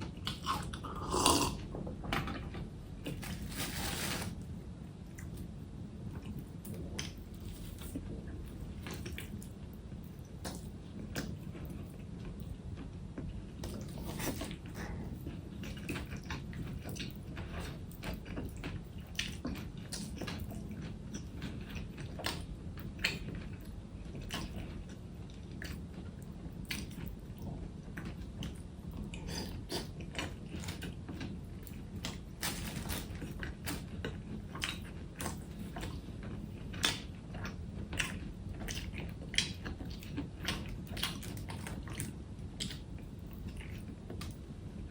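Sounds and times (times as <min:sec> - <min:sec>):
chewing and crunching: 0:00.0 - 0:44.9
low steady hum: 0:00.0 - 0:44.9.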